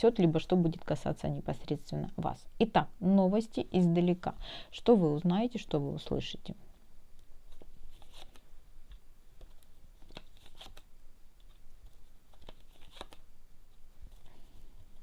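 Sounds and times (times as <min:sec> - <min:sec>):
cards clicking and rustling: 0:09.4 - 0:10.8, 0:11.4 - 0:13.2.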